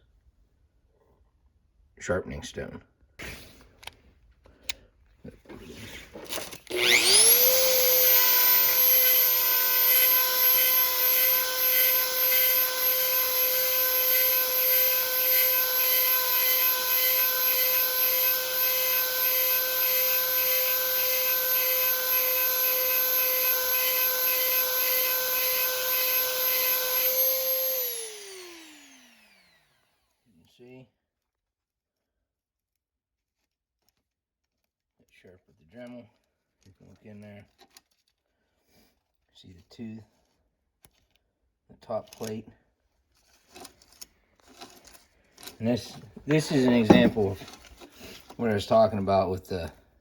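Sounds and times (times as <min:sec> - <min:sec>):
rotary tool grinding whine: 0:06.0 - 0:30.0, 0:44.5 - 0:48.9.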